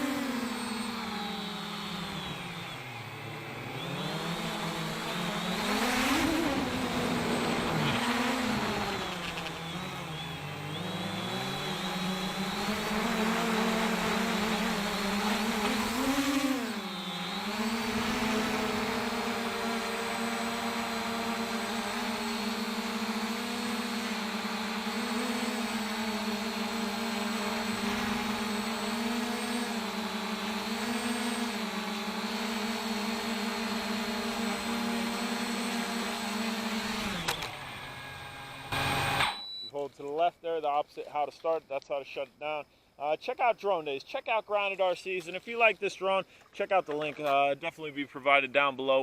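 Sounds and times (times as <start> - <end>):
drone motors whining: 0.0 - 39.7.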